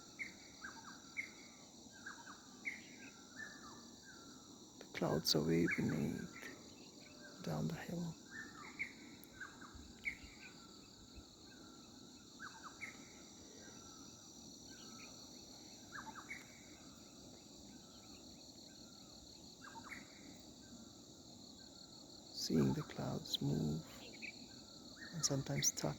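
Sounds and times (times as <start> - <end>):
insects chirping: 0.0 - 25.9
bird chirps: 5.0 - 20.8, 22.4 - 25.9.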